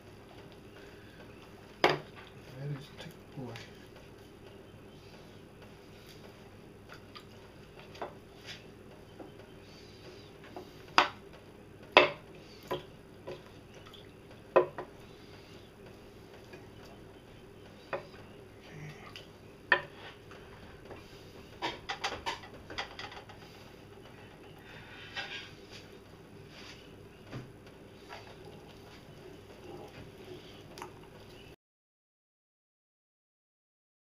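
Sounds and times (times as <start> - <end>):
faint steady hum: 0.0 - 31.6.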